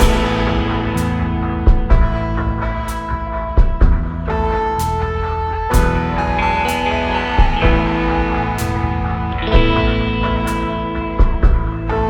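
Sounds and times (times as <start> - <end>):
drum hits: 0.0 - 4.4, 5.7 - 6.3, 7.4 - 8.2
guitar chords: 0.0 - 12.0.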